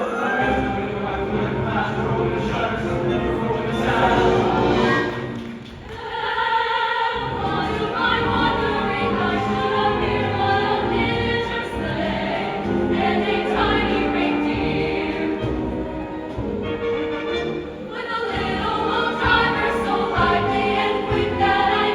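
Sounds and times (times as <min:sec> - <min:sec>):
choir singing: 0:00.0 - 0:21.9
instrumental accompaniment: 0:07.2 - 0:21.9.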